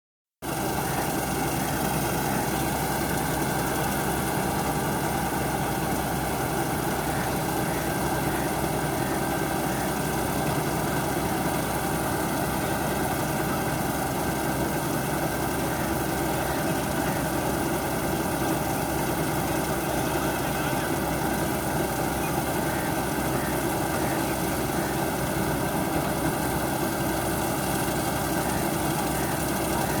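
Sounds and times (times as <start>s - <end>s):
combine harvester running: 0.4s - 30.0s.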